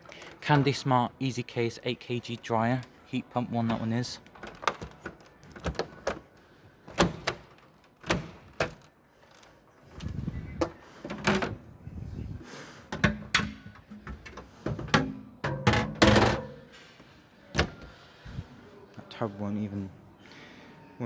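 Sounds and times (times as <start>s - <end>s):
dryer doors clicking and knocking: 3.7s - 6.3s, 6.9s - 8.9s, 10.6s - 11.6s, 12.9s - 16.7s, 17.6s - 17.9s.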